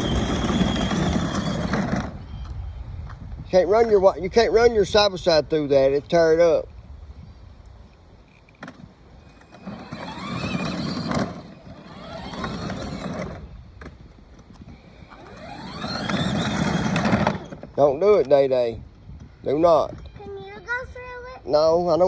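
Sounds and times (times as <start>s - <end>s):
vehicle passing with whine: 0.0s - 2.3s, 9.4s - 13.5s, 15.0s - 17.7s.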